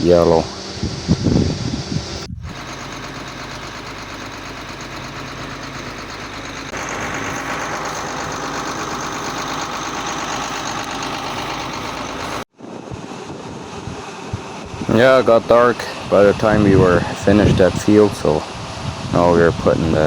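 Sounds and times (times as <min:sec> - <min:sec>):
combine harvester droning: 0:00.0 - 0:20.0.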